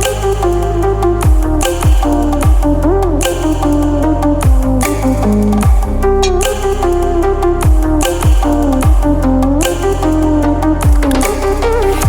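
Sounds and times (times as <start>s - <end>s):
electronic music: 0.0s - 12.0s
deep bass kick drum: 1.2s - 3.2s, 4.4s - 6.7s, 7.6s - 9.4s, 10.8s - 12.0s.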